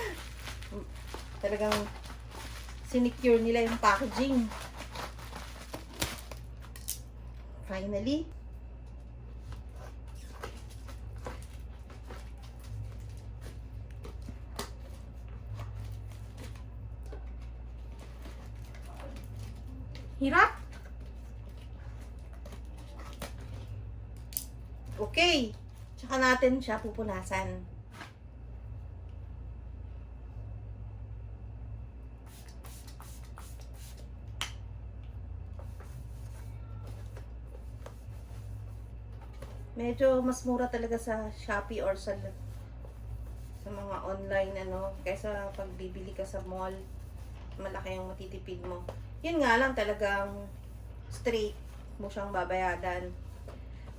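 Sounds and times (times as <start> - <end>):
packaging crinkling: 0.0 - 6.9
low steady hum: 0.0 - 53.9.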